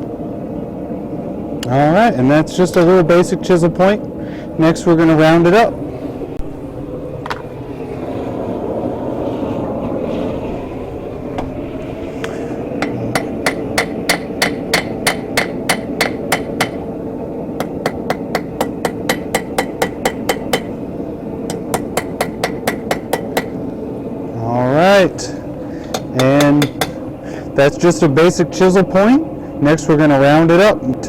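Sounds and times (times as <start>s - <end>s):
steady background rush: 0.0s - 31.0s
hammer striking steel on anvil: 12.8s - 16.8s, 17.6s - 20.8s, 21.5s - 23.6s, 25.8s - 27.0s.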